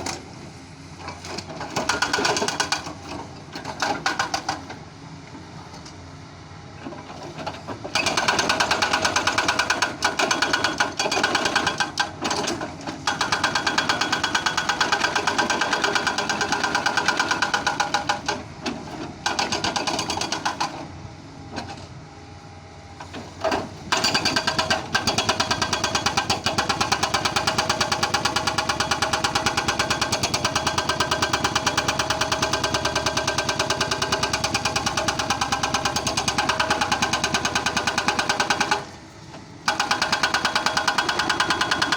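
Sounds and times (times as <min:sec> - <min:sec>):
excavator hammering: 0:13.1 - 0:18.4, 0:39.7 - 0:41.9.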